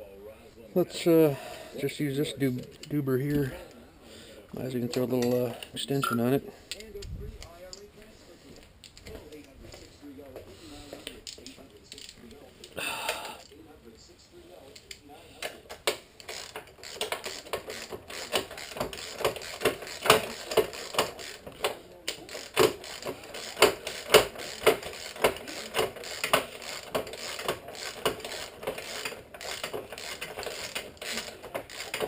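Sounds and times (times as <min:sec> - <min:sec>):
ratchet wrench clicking: 0:16.2 - 0:32.0.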